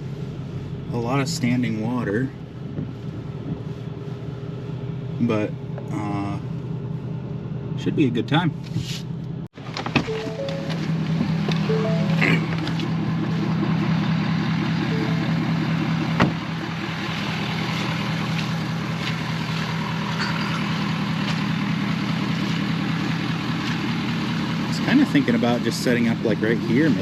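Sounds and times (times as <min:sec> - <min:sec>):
truck engine running at low revs: 0:00.0 - 0:27.0.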